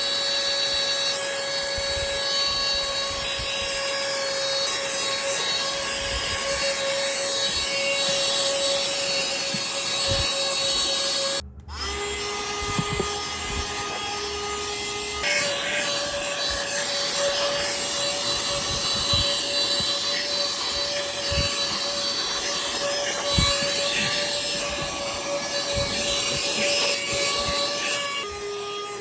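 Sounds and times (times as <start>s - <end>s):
handheld vacuum motor whine: 0.0s - 29.0s
nozzle bumping and rubbing: 12.4s - 28.3s.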